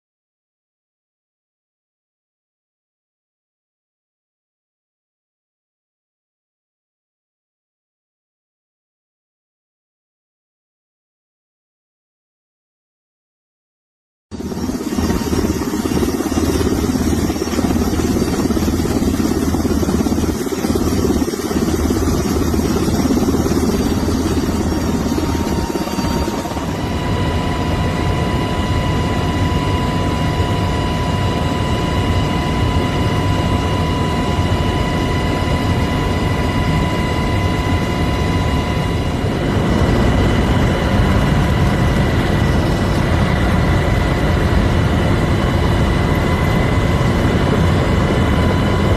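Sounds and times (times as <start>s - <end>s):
helicopter rotor and turbine: 14.3s - 48.9s
steady high whine: 14.3s - 48.9s.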